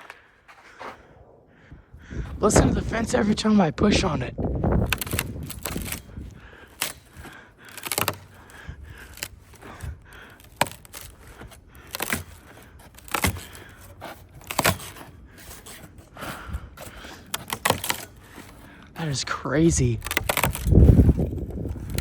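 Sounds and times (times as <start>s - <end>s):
ice cracking on fence: 4.7s - 15.9s, 16.8s - 22.0s.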